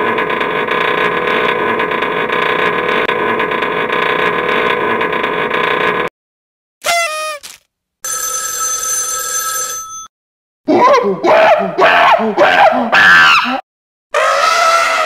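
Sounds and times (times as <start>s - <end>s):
steady ringing electronic tone: 8.0s - 10.1s.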